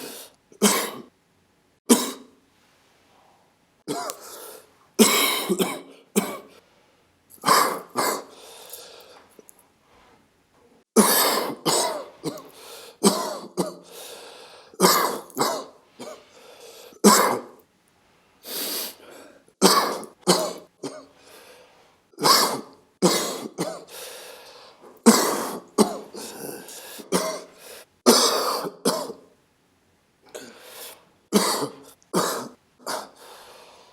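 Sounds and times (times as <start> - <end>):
person coughing: 0.0 - 1.1, 1.9 - 2.4, 3.9 - 6.6, 7.4 - 8.4, 11.0 - 13.9, 14.8 - 16.4, 17.0 - 17.6, 19.1 - 21.2, 22.2 - 24.0, 25.0 - 29.3, 31.3 - 33.2.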